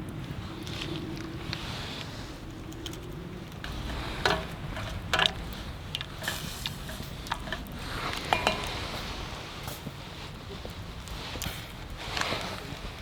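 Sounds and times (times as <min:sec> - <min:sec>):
utensils clinking against dishes: 0:03.7 - 0:09.2.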